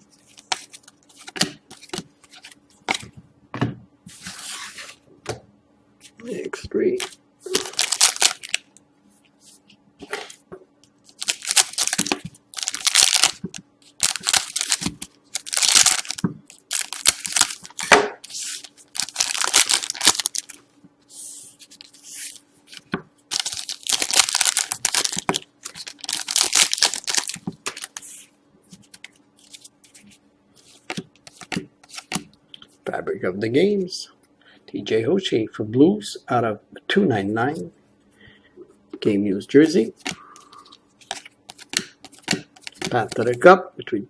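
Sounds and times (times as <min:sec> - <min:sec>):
card pack wrappers tearing: 0:07.0 - 0:08.6, 0:11.1 - 0:20.6, 0:21.6 - 0:28.2.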